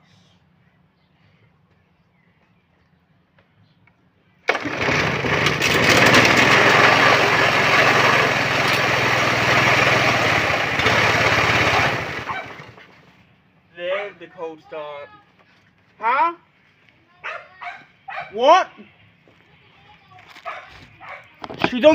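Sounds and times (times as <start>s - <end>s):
lawnmower engine starting and running: 4.4s - 13.2s.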